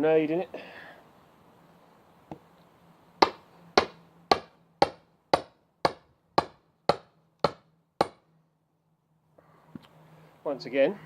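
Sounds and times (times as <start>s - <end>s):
sledgehammer striking steel wedge: 3.2s - 8.2s.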